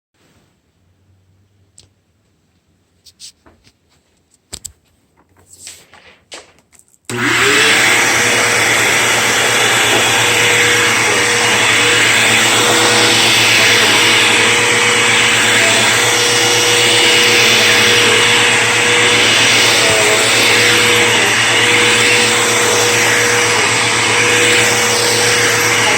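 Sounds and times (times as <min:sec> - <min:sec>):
vacuum cleaner motor running: 0:07.1 - 0:25.9.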